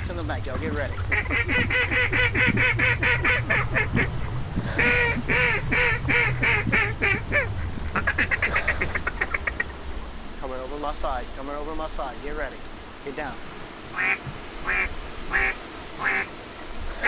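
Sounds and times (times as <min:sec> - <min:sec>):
duck quacking: 0:00.0 - 0:09.8, 0:13.9 - 0:16.3
low rumble: 0:00.0 - 0:11.6.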